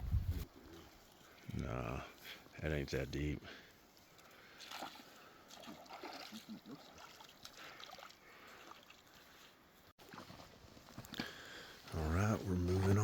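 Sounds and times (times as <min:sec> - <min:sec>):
stream trickling and gurgling: 0:00.5 - 0:10.6
small water splashes: 0:03.8 - 0:09.4.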